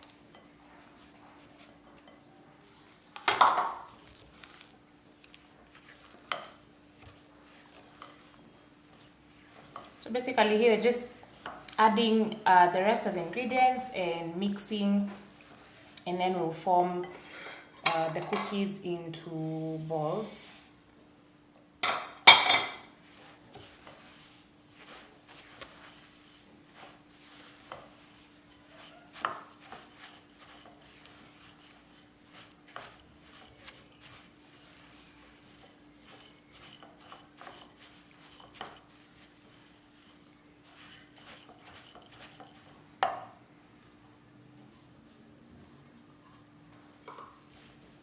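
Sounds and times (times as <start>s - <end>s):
utensil scraping a mixing bowl: 23.0s - 42.9s.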